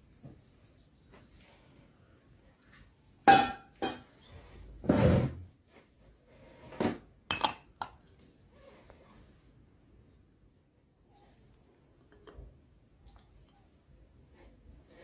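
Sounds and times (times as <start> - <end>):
dishes and utensils clinking: 7.3 - 8.0.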